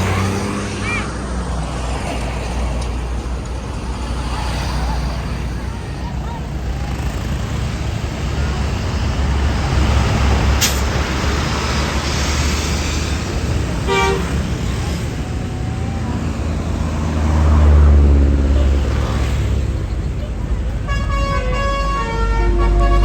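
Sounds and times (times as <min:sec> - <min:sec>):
bus engine rumble: 0:00.0 - 0:23.0
sharp air hiss: 0:10.5 - 0:11.0
short horn toot: 0:13.9 - 0:14.4, 0:20.9 - 0:23.0.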